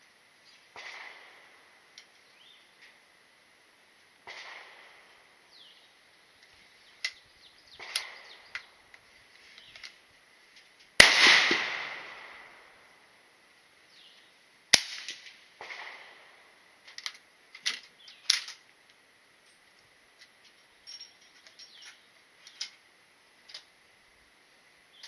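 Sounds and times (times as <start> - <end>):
gunshots with echo: 0.7 - 1.6, 4.2 - 5.2, 11.0 - 12.6, 15.6 - 16.4.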